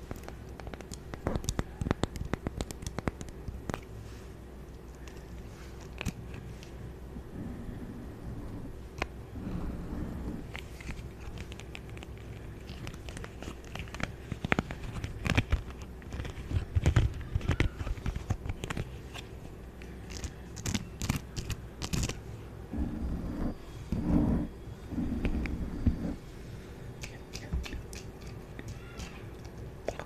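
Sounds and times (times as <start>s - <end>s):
object crinkling: 10.4s - 22.2s.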